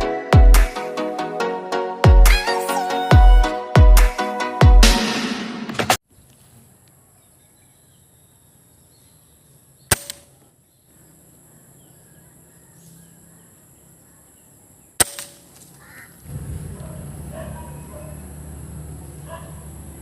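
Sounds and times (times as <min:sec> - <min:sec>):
air rifle shots: 0:09.9 - 0:10.4, 0:15.0 - 0:15.5.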